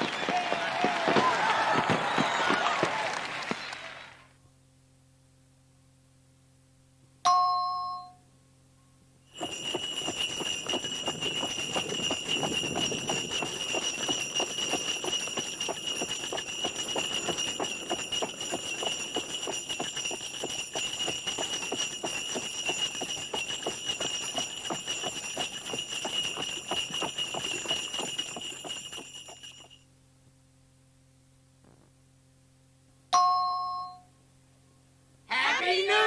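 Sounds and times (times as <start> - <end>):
faint hum: 0.0 - 15.4, 26.5 - 36.0
horse hooves clip-clopping: 9.3 - 29.8
sleigh bells jingling: 9.3 - 29.8.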